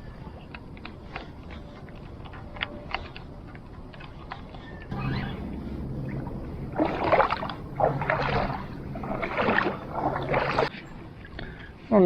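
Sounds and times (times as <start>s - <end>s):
faint low hum: 0.0s - 11.7s
paddle splashing in water: 5.0s - 10.8s.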